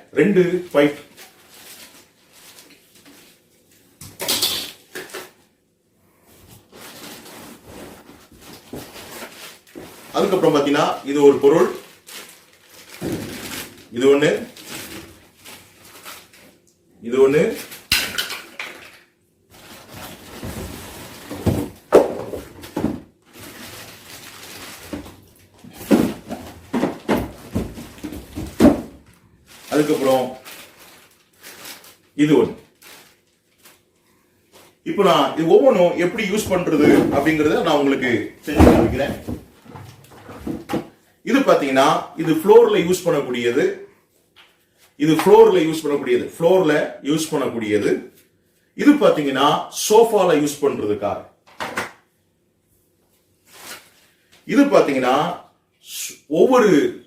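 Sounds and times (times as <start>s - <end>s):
plastic pipes knocking and clattering: 20.3s - 23.1s, 24.9s - 29.2s, 38.5s - 41.0s.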